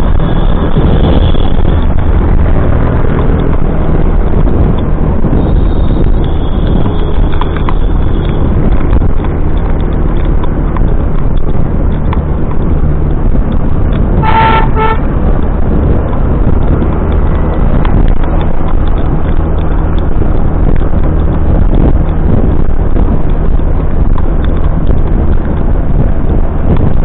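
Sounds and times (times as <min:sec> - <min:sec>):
motorcycle engine and road noise: 0:00.0 - 0:27.0
vehicle horn toots: 0:14.2 - 0:15.1.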